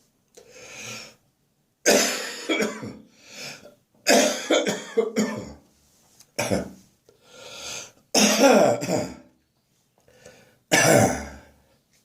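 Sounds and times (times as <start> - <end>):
breath in: 0.4 - 1.2, 7.1 - 8.0, 10.1 - 10.6
person coughing: 1.9 - 3.0, 4.1 - 5.6, 6.4 - 6.8, 8.2 - 9.3, 10.7 - 11.5.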